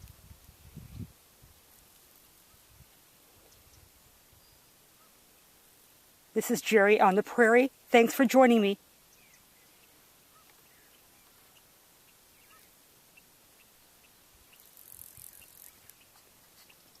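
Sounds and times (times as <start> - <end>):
bird chirps: 9.1 - 17.0.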